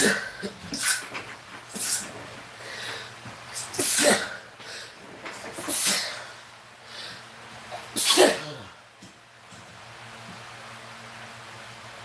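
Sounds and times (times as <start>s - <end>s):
man sneezing: 0.0s - 1.0s, 3.6s - 4.4s, 5.6s - 6.3s, 7.8s - 8.8s.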